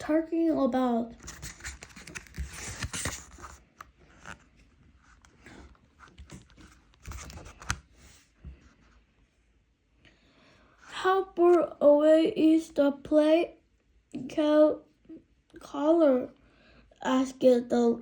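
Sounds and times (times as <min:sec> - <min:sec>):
paper page rustling: 0:01.2 - 0:09.0.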